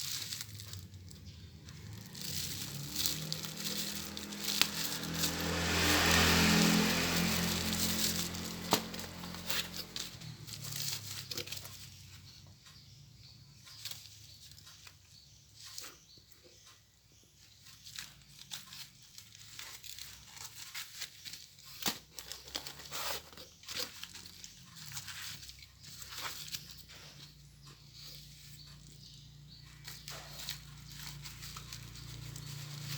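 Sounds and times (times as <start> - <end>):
packaging crinkling and tearing: 0.0 - 11.8, 17.9 - 26.9.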